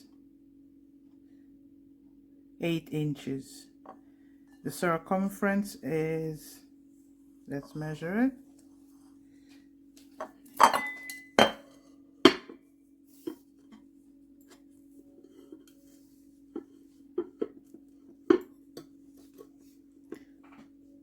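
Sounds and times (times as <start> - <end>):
faint steady hum: 0.0 - 21.0
bowl knocking on table: 12.3 - 12.6.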